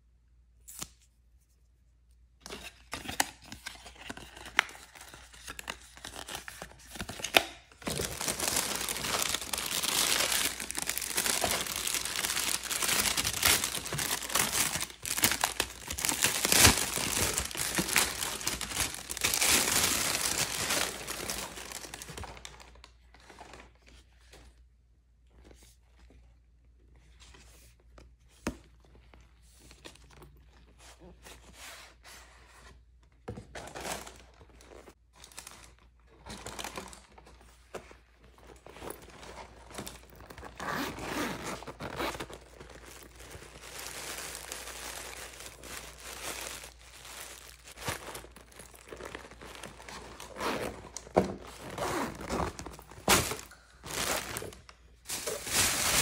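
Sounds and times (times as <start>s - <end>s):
paper or plastic crinkling: 5.5s - 23.5s, 41.6s - 56.0s.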